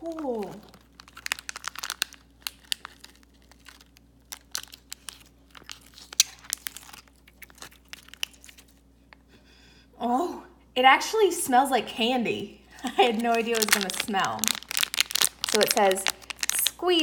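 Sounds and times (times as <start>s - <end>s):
plastic packet crinkling: 0.0s - 8.8s, 12.7s - 17.0s.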